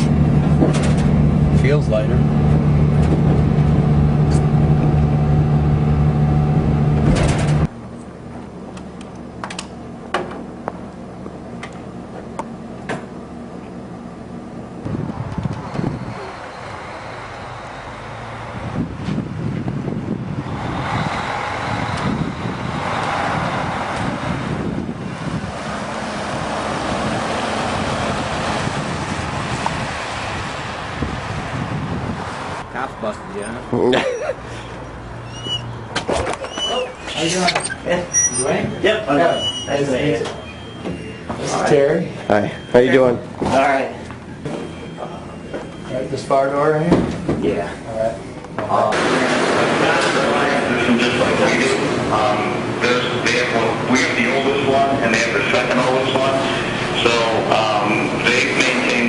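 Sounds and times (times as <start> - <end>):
vehicle engine droning: 0.0 - 59.0
wind rushing: 14.8 - 16.8, 18.2 - 32.7.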